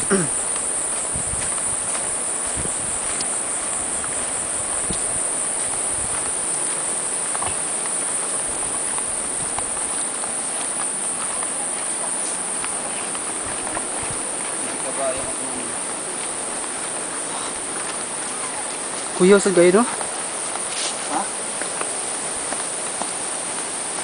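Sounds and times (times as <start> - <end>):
insects droning: 0.0 - 24.0
faint ticks: 4.8 - 5.2.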